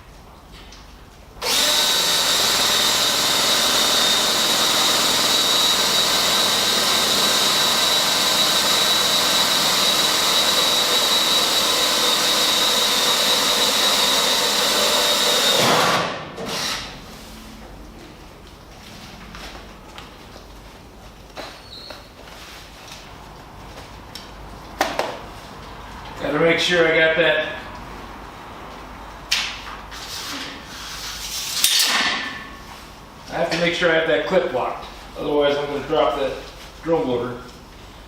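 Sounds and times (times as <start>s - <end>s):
electric drill whining: 1.4s - 16.9s.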